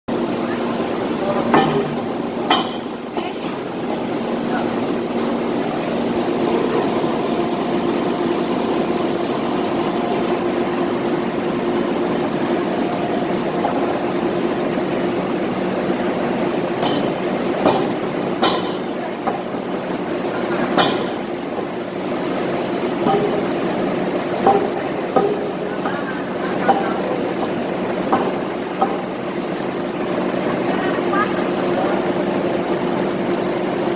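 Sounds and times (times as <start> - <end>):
machinery humming: 0.1 - 33.9
sharp knocks: 16.8 - 19.5, 20.8 - 21.2, 23.0 - 23.5.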